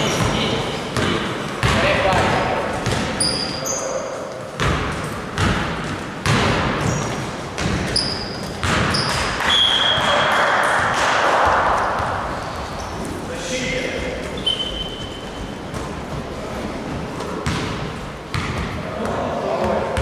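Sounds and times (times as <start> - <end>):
basketballs bouncing on gym floor: 0.0 - 3.6, 4.6 - 13.0, 17.1 - 20.0
sneaker squeaks: 2.8 - 4.3, 6.8 - 10.8, 11.7 - 13.3, 14.2 - 16.0.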